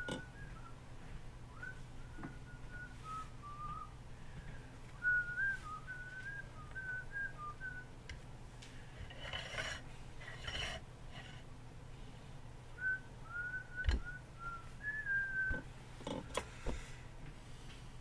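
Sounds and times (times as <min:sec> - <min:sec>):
person whistling a tune: 0:01.5 - 0:04.0, 0:05.0 - 0:07.8, 0:12.8 - 0:15.6
rustling scrape: 0:08.9 - 0:11.4.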